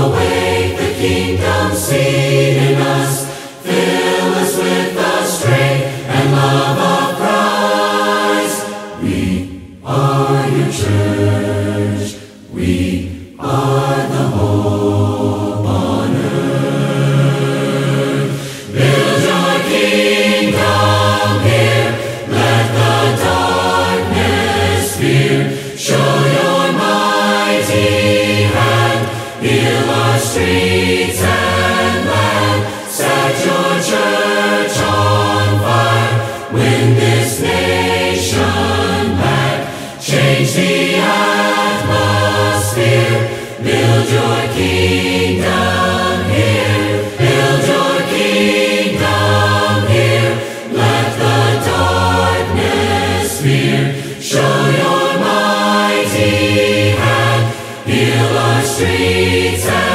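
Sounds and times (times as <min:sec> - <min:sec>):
group singing in harmony: 0:00.0 - 0:59.9
singers breathing: 0:03.2 - 0:03.7, 0:05.8 - 0:06.2, 0:12.1 - 0:12.5, 0:18.3 - 0:18.8, 0:21.8 - 0:22.3, 0:25.3 - 0:25.9, 0:29.0 - 0:30.0, 0:32.5 - 0:33.0, 0:36.2 - 0:36.6, 0:39.6 - 0:40.1, 0:43.2 - 0:43.7, 0:46.9 - 0:47.3, 0:50.3 - 0:50.8, 0:53.8 - 0:54.3, 0:57.4 - 0:57.9.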